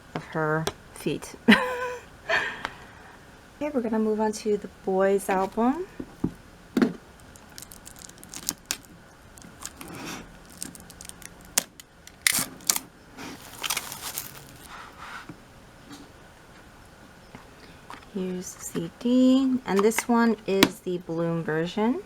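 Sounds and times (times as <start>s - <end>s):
packaging rustling and clicking: 7.2s - 14.7s.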